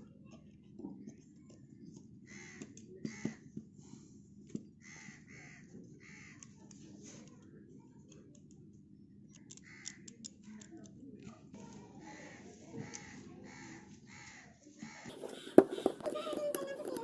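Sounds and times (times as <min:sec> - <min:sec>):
faint bird calls: 0:04.8 - 0:06.5, 0:12.0 - 0:16.4.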